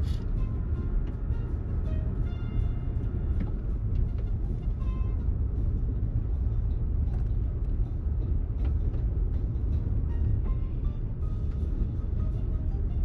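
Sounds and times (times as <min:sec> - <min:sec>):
vehicle driving on rough road: 0:00.0 - 0:13.0.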